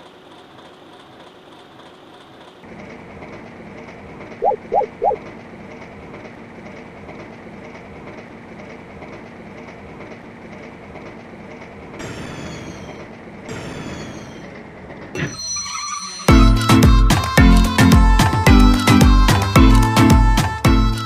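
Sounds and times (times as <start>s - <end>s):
train rumbling on rails: 0.0s - 15.2s.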